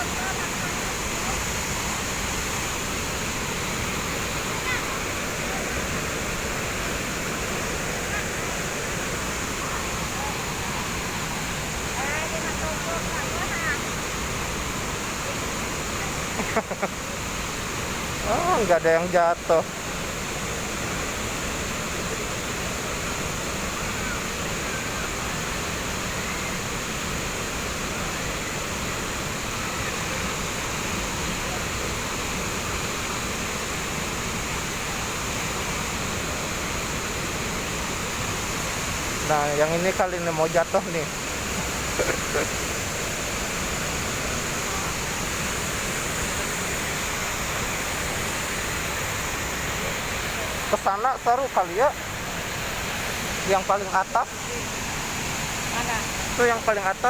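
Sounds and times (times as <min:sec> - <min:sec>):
waterfall rushing: 0:00.0 - 0:57.0.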